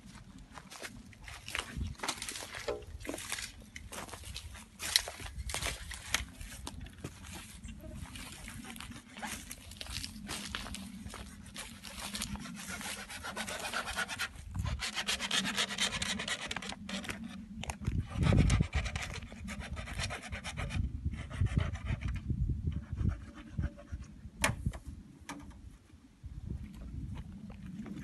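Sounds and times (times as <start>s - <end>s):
rhythmic rasping scrapes: 11.6s - 17.2s.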